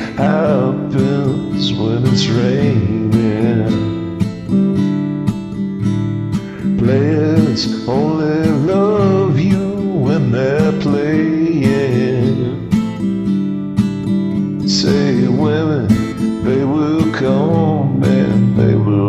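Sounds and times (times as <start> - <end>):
person singing: 0.0 - 4.2, 6.4 - 12.7, 14.6 - 19.0
strummed acoustic guitar: 0.0 - 19.0.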